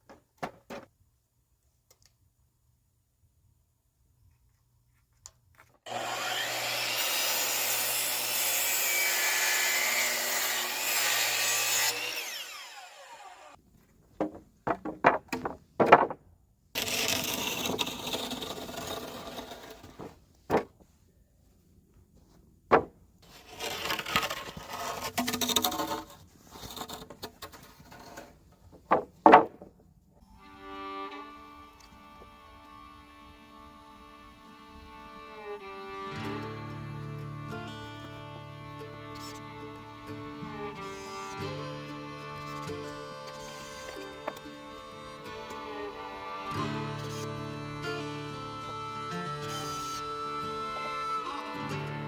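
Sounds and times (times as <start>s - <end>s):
power saw cutting wood: 5.9s - 13.6s, 16.8s - 20.6s, 38.9s - 52.0s
sharp wooden knocks: 14.2s - 16.2s, 20.0s - 20.8s, 22.7s - 23.0s, 28.7s - 29.8s.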